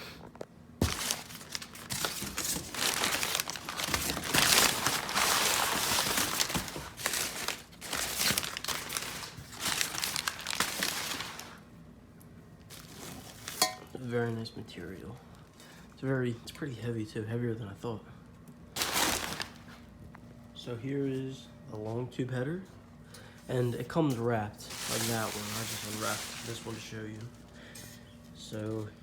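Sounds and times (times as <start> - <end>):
packing wrap crinkling: 0.8 - 11.6, 12.6 - 13.8, 18.8 - 19.9, 24.6 - 27.6.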